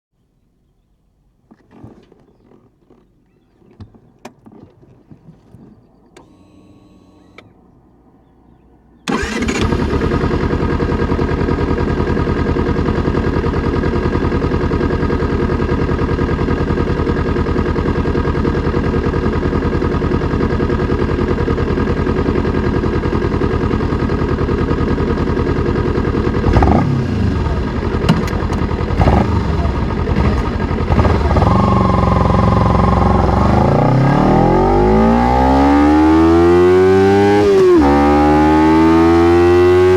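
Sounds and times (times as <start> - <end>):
motorcycle engine starting and idling: 5.9 - 39.9
throttle blips revving: 29.0 - 39.9.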